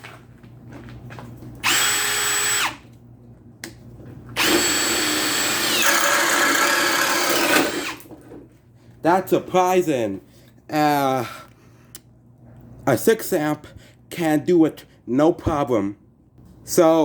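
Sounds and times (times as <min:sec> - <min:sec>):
drill boring into wood: 0:01.6 - 0:02.8, 0:04.4 - 0:08.0.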